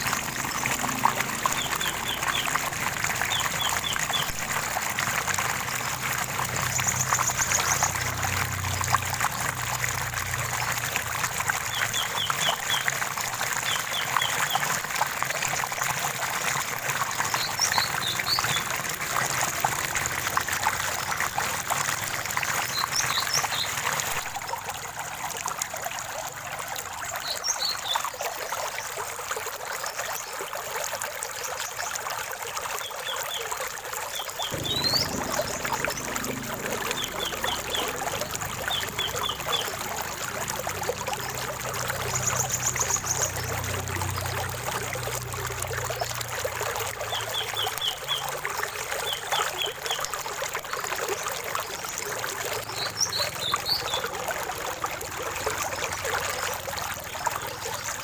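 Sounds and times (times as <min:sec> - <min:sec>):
birds chirping: 0:00.0 - 0:04.6, 0:34.2 - 0:43.6
water trickling and splashing: 0:00.0 - 0:58.0.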